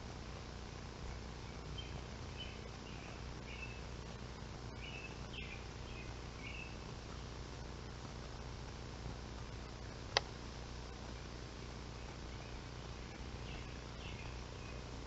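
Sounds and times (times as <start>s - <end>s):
steady background hiss: 0.0s - 15.0s
small bird chirping: 1.0s - 4.0s, 4.7s - 7.3s, 12.0s - 14.9s.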